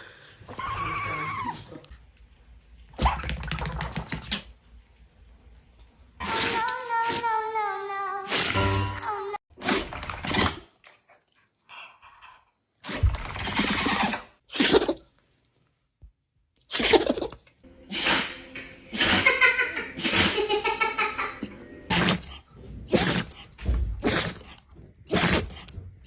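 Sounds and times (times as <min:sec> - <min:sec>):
dogs sneezing: 0:14.5 - 0:15.0, 0:16.7 - 0:19.4, 0:20.0 - 0:20.4, 0:21.9 - 0:25.8.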